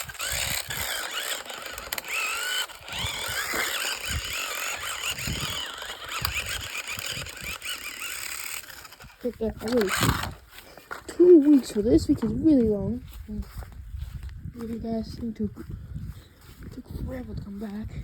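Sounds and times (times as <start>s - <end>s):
toy car motor whining: 0.0s - 10.4s.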